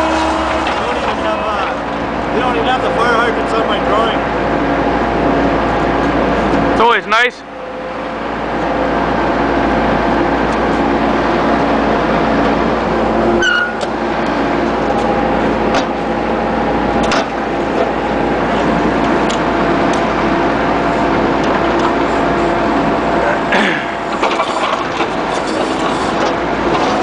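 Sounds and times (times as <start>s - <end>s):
loader engine running: 0.0s - 27.0s
falling squeal: 13.4s - 13.8s.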